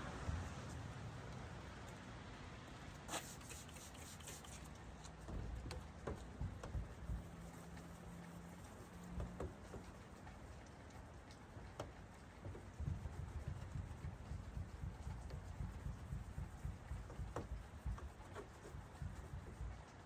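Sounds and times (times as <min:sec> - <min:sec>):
rubbing and handling noises: 0:03.1 - 0:11.4, 0:12.4 - 0:20.0
light clicks and ticks: 0:07.7 - 0:12.9.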